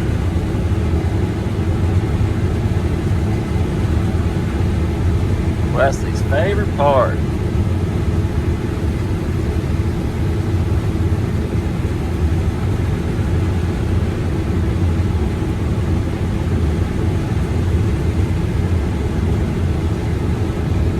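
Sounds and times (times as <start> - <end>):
combine harvester engine drone: 5.7 - 7.2.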